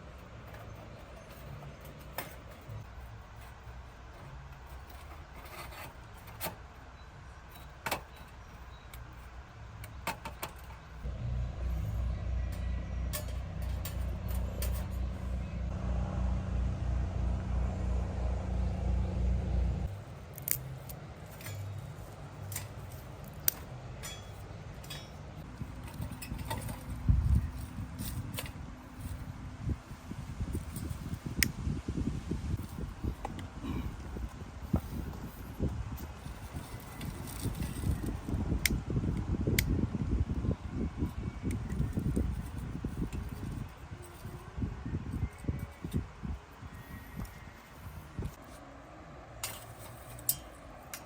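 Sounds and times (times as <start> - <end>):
low pulsing engine hum: 10.9 - 49.4
light clicks and clinks: 49.4 - 51.0.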